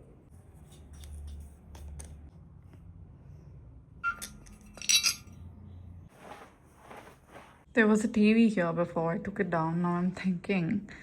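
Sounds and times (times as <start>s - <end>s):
hard objects clinking: 4.0s - 5.4s.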